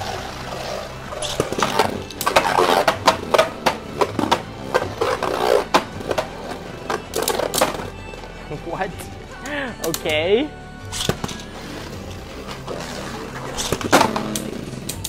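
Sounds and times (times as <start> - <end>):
spinning tops scraping whir: 0.0 - 7.8.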